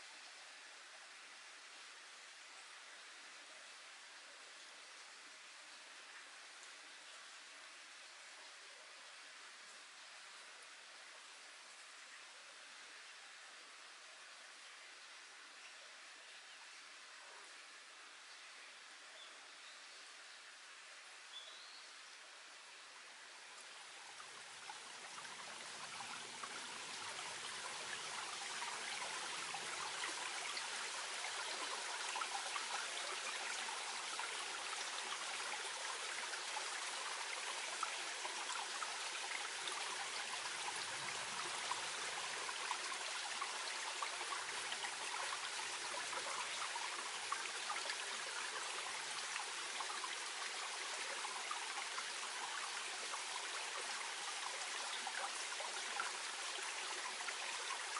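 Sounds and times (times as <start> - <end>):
stream babbling: 21.9 - 57.9.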